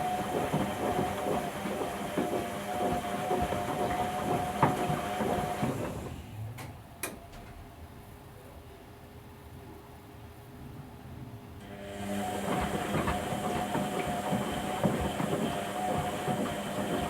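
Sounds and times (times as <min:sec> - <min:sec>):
washing machine drum turning: 0:12.2 - 0:17.0.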